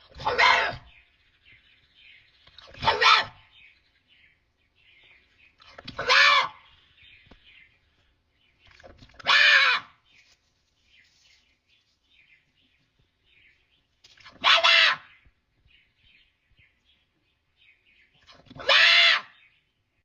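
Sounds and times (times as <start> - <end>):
small birds chirping: 0.0 - 20.0
animal calling loudly: 0.1 - 0.9, 2.6 - 3.5, 5.8 - 6.7, 9.1 - 10.0, 14.3 - 15.1, 18.3 - 19.4.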